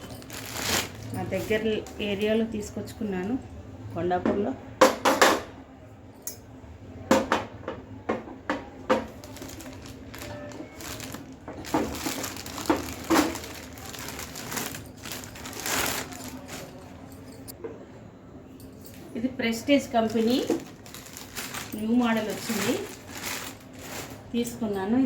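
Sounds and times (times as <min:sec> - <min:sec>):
packaging crinkling and rustling: 0:00.0 - 0:01.8, 0:09.0 - 0:17.2, 0:20.0 - 0:24.4.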